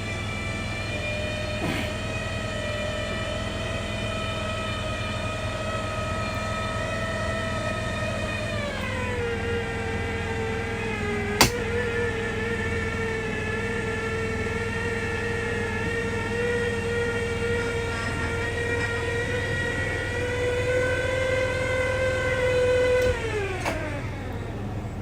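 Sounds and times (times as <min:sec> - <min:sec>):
electric motor whining: 0:00.0 - 0:25.0
switch click: 0:11.4 - 0:11.6.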